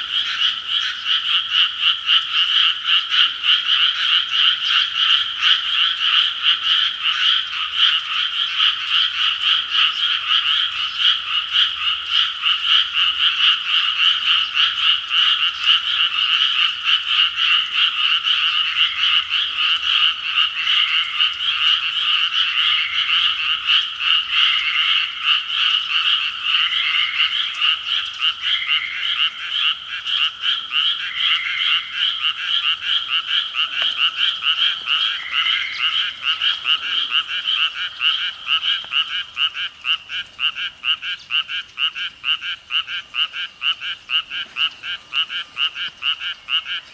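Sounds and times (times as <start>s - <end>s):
chorus of frogs calling: 0.0s - 46.9s.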